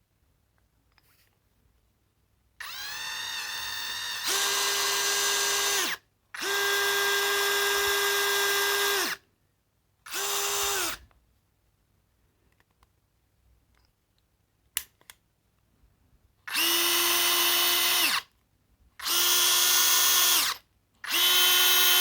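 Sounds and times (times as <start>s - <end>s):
cordless drill motor whining: 2.6s - 9.2s, 10.1s - 11.0s, 16.5s - 18.2s, 19.0s - 22.0s.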